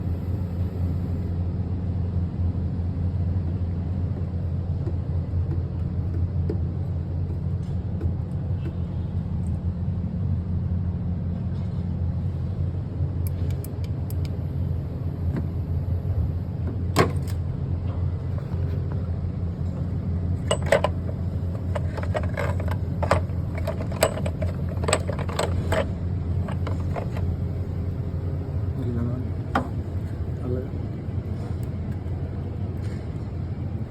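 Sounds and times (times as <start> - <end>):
engine clicks and knocks: 3.5 - 9.6, 20.3 - 30.4
car engine idling: 26.3 - 30.7.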